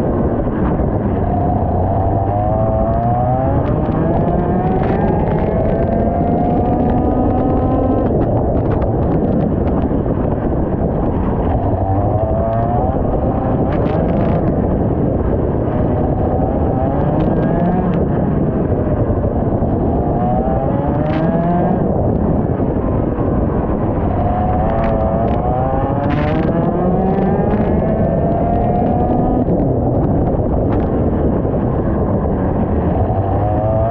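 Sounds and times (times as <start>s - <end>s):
heavy rushing noise: 0.0s - 33.9s.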